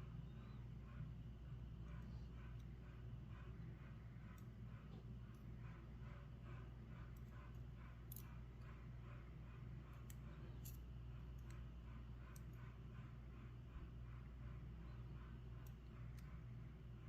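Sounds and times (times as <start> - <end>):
low steady hum: 0.0 - 17.0
small metallic clicks: 10.0 - 11.6.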